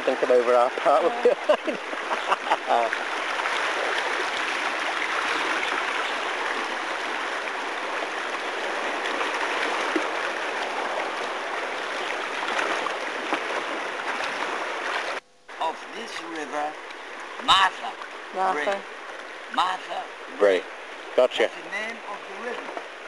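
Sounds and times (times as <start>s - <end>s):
river water rushing and gurgling: 0.0s - 16.0s, 16.6s - 23.0s.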